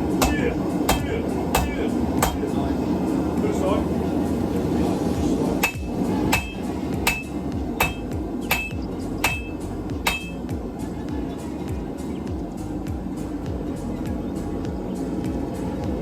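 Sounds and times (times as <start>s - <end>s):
hammer striking steel on anvil: 0.1s - 2.5s, 5.6s - 10.5s.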